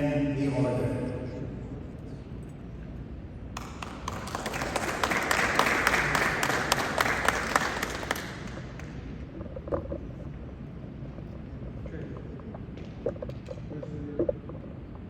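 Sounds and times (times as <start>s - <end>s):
audience applauding: 3.6s - 9.1s.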